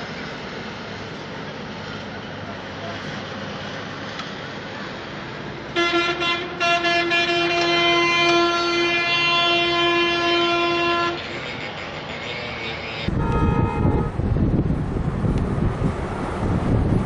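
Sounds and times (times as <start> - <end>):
bus horn: 5.7 - 14.3
loud low rushing noise: 13.1 - 17.0.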